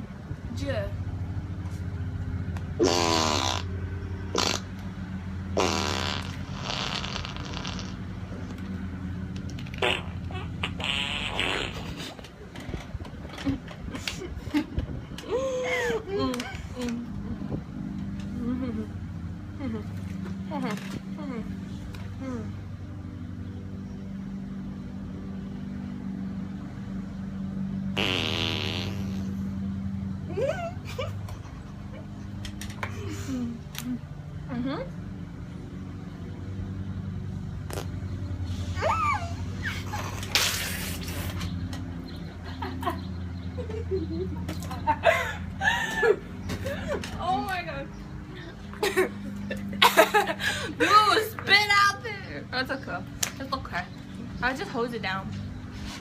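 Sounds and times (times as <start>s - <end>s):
lawnmower engine droning: 0.0s - 56.0s
fart sound effects: 2.8s - 3.7s, 4.3s - 4.8s, 5.6s - 8.1s, 9.7s - 12.2s, 28.0s - 29.4s, 37.7s - 38.0s
loud buzzy burst: 5.6s - 8.0s, 28.0s - 29.4s.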